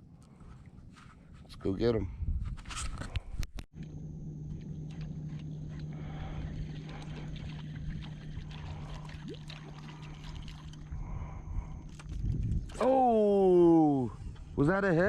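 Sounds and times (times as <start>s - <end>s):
steady low hum: 3.0s - 15.0s
faint high whine: 3.8s - 15.0s
small ticks and splashes: 4.9s - 12.8s.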